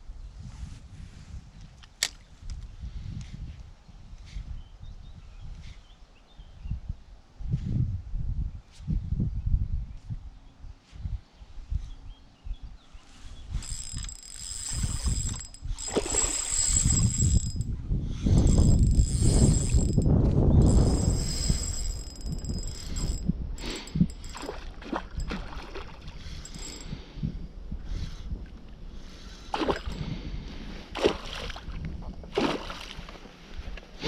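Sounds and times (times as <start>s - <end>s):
fishing reel gear whine: 13.5s - 25.4s, 26.2s - 27.2s, 29.5s - 30.1s
handling noise: 13.6s - 17.7s, 18.3s - 24.5s.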